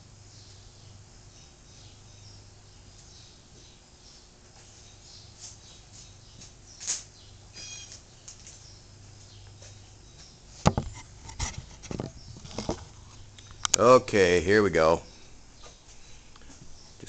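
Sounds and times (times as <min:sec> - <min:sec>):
brief squeak: 0:07.6 - 0:07.9
objects knocking and clicking: 0:10.7 - 0:12.9.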